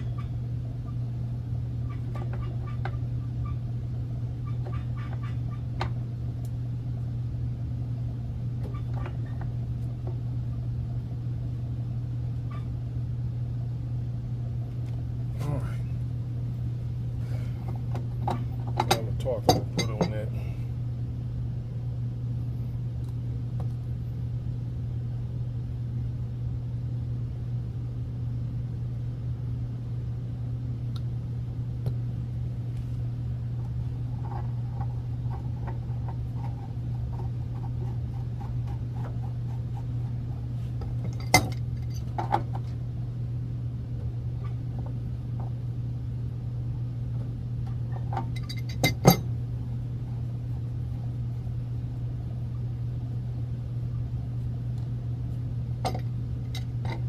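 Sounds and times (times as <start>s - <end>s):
steady low hum: 0.0s - 57.0s
metal tools and fittings clinking: 18.8s - 20.2s, 48.3s - 49.3s.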